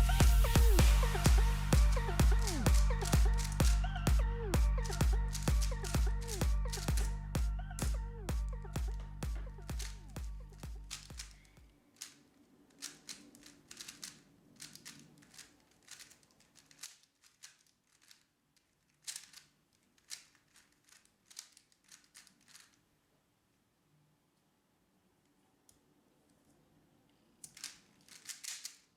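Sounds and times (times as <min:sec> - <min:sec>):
music: 0:00.0 - 0:10.4.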